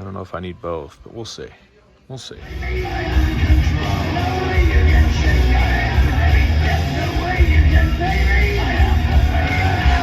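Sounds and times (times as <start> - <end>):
heavy pulsing bass: 2.4 - 10.0
person singing: 2.4 - 10.0
rock music: 2.4 - 10.0.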